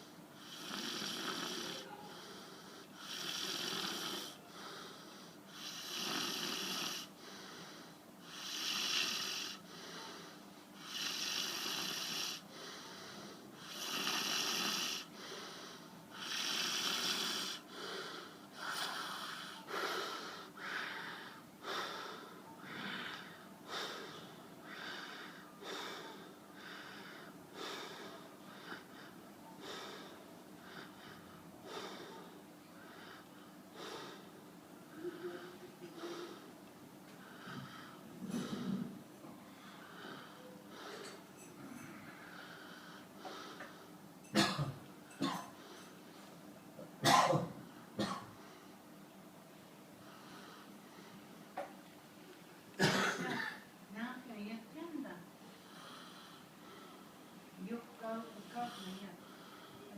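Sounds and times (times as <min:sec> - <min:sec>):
person snoring wheezily: 0:00.4 - 0:02.4, 0:03.0 - 0:04.4, 0:05.5 - 0:07.1, 0:08.3 - 0:09.6, 0:10.8 - 0:12.4, 0:13.6 - 0:15.1, 0:16.2 - 0:17.6.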